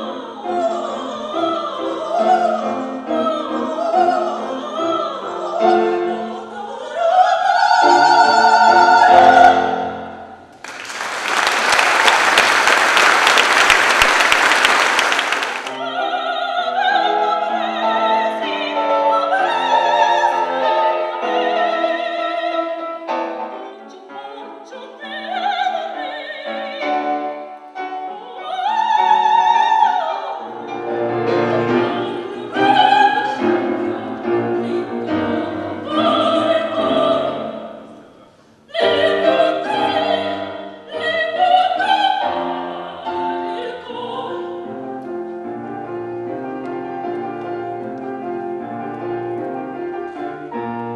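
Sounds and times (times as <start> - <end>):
woman singing operatically: 0.0 - 10.0, 15.7 - 27.1, 28.0 - 30.7, 31.3 - 37.9, 38.7 - 44.7
piano: 0.0 - 50.9.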